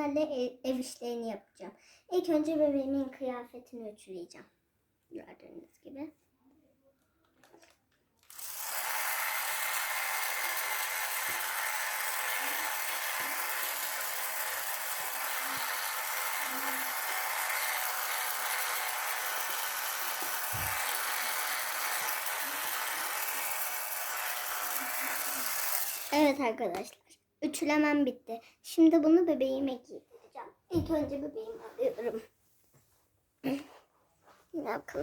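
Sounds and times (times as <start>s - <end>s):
toy iron hissing buzz: 8.3s - 26.3s.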